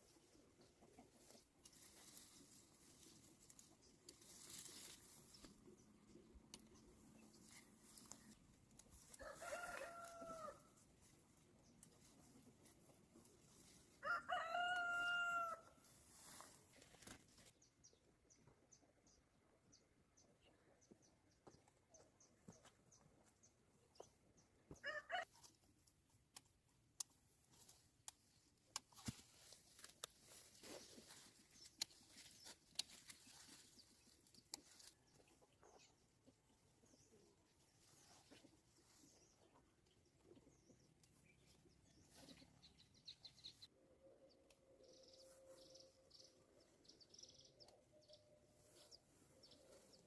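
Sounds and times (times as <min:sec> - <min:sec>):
rooster crowing: 0:09.2 - 0:10.7, 0:14.0 - 0:15.7.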